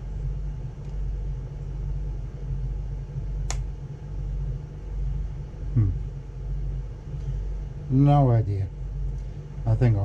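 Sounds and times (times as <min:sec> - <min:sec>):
low background hum: 0:00.0 - 0:10.0
sharp click: 0:03.4 - 0:03.7.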